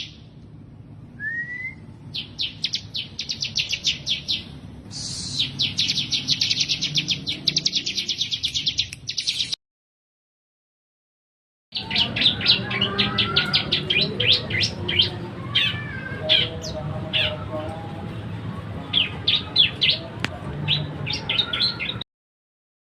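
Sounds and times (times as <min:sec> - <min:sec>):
songbird chirping: 0:01.2 - 0:09.6, 0:11.8 - 0:18.1.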